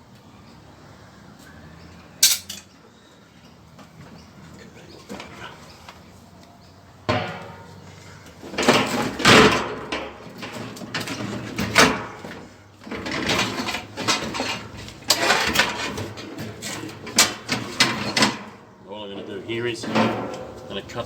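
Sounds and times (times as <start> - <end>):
metal parts clattering and scraping: 2.2 - 2.7, 8.4 - 21.0.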